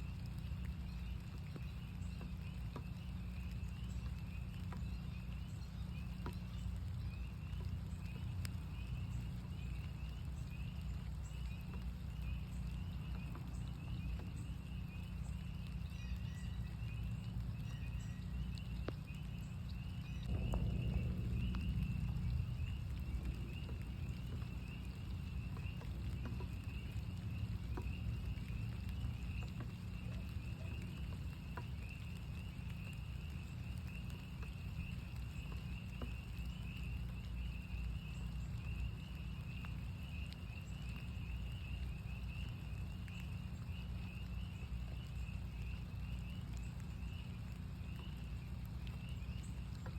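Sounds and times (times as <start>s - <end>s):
low rumble: 0.0s - 39.5s
raindrops tapping: 0.0s - 49.9s
spring peepers calling: 0.0s - 49.9s.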